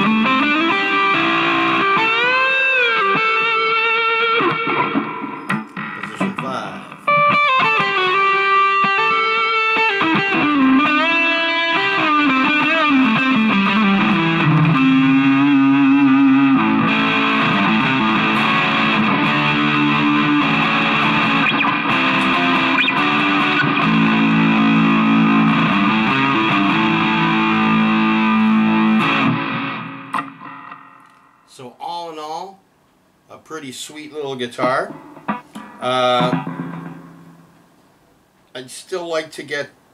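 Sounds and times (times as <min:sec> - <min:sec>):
distorted electric guitar: 0:00.0 - 0:31.5, 0:34.6 - 0:37.8.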